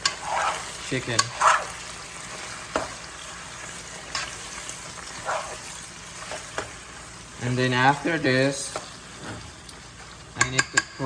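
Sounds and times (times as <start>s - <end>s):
utensil scraping a pan: 0.0s - 3.0s, 4.1s - 6.8s
meat sizzling in a pan: 0.0s - 11.0s.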